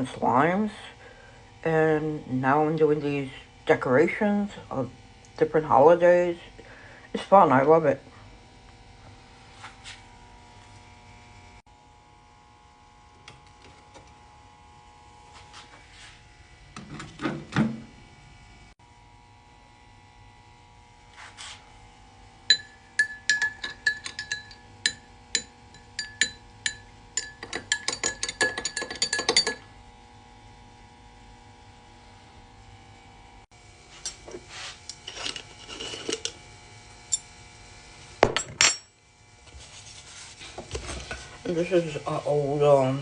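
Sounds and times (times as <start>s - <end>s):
faint steady hum: 0.0s - 43.0s
spoon clinking against mug: 22.5s - 29.7s.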